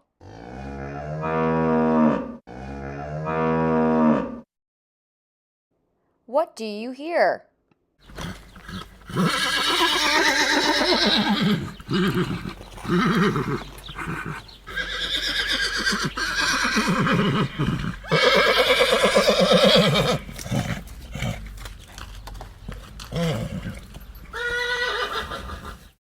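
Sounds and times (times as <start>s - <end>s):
horse neighing: 8.0s - 21.6s, 23.0s - 26.0s.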